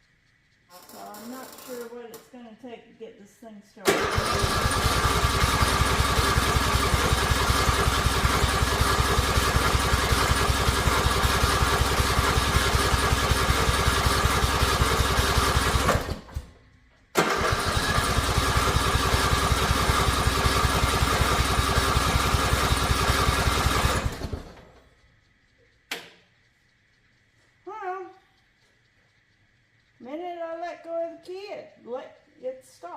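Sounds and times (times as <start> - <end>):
lawn mower engine cranking: 0.7 - 2.2, 3.9 - 16.5, 17.1 - 24.9
sharp click: 24.6 - 27.3.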